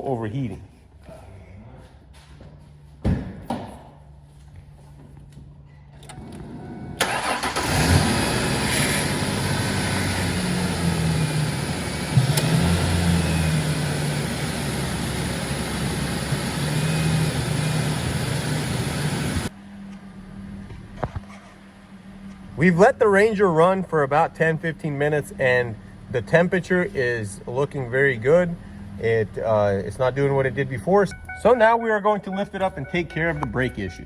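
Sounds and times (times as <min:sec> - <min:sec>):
pickup engine starting and running: 0:06.0 - 0:20.6, 0:21.8 - 0:34.0.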